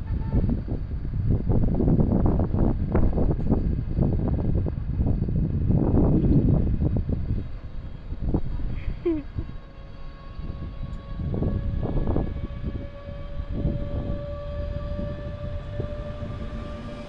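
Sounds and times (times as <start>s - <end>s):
train rumble: 0.0s - 17.0s
train wheels squealing: 9.4s - 17.0s.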